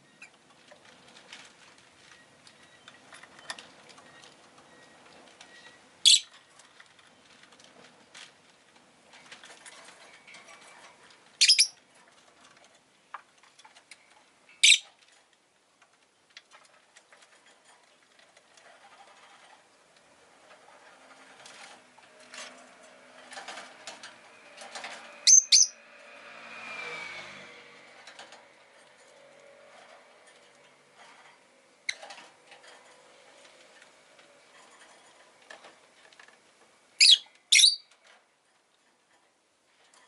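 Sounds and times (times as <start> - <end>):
faint clicks and rustles: 0.0 - 26.4, 27.2 - 40.0
bird high-pitched calls: 6.0 - 6.3, 11.4 - 11.8, 14.6 - 14.8, 25.2 - 25.8, 37.0 - 37.9
street noise: 20.2 - 36.8.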